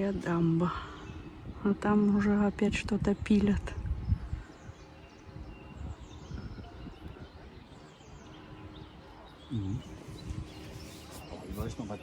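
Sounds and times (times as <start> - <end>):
faint bird chirps: 0.0 - 12.0.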